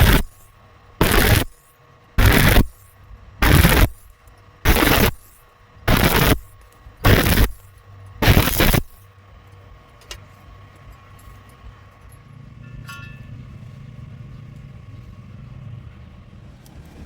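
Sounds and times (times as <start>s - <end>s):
welding arc crackling: 0.0s - 9.1s.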